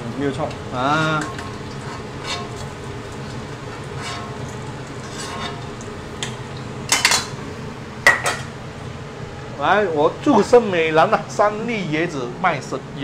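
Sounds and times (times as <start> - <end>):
food sizzling in hot oil: 0.2 - 8.6
stirring scrapes: 0.8 - 5.9
metal utensil clattering on pan: 1.0 - 2.7, 3.8 - 5.8, 6.9 - 7.4, 8.0 - 8.5.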